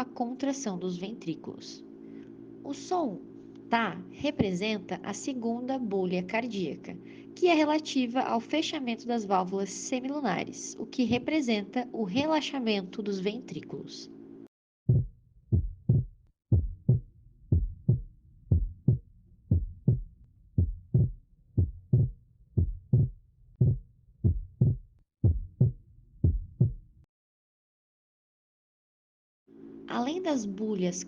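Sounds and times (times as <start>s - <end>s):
heartbeat thumps: 14.9s - 27.0s.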